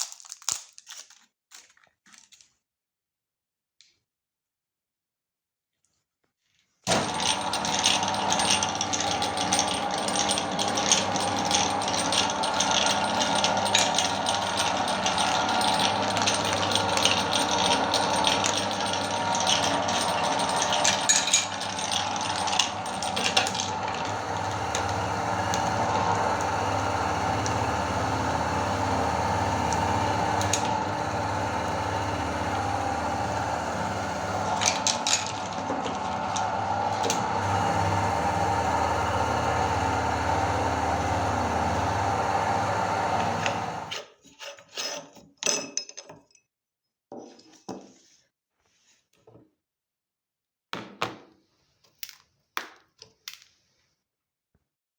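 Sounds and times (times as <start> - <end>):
hard candy cracking: 0.0 - 2.5
meat grinder motor hum: 6.9 - 44.0.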